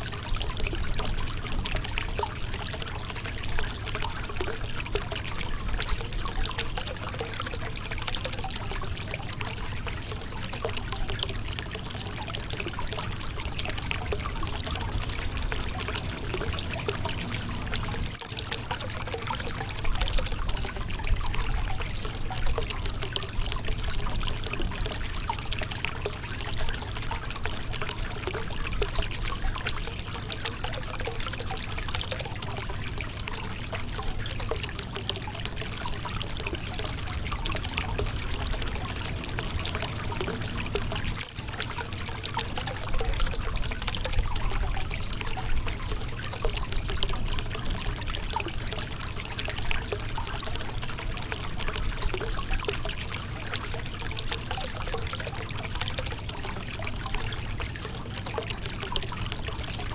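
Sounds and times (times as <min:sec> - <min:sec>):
river water over rocks: 0:00.0 - 0:59.9.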